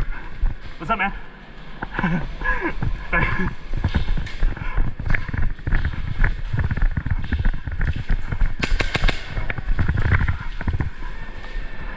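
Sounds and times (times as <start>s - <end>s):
low rumbling and thumping: 0.0s - 0.9s, 1.7s - 11.9s
sharp cracks: 7.3s - 10.4s.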